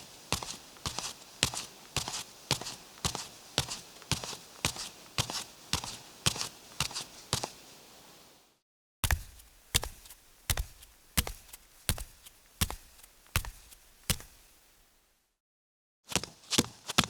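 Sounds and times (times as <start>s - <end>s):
footsteps walking: 9.0s - 15.1s.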